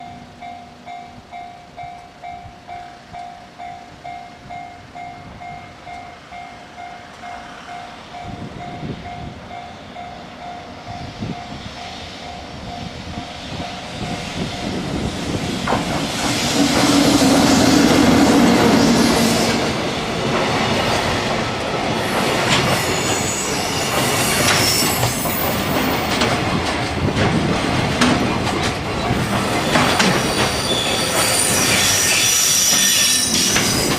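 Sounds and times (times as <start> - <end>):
freight train passing: 0.0 - 33.9
high-pitched wheel squeals: 22.8 - 25.7, 29.5 - 33.9.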